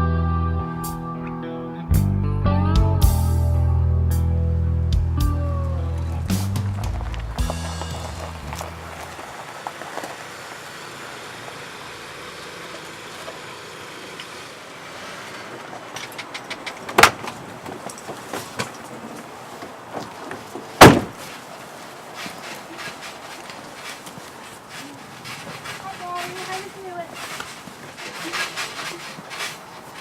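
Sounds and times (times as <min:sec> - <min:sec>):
loud thuds: 0:20.8 - 0:21.2.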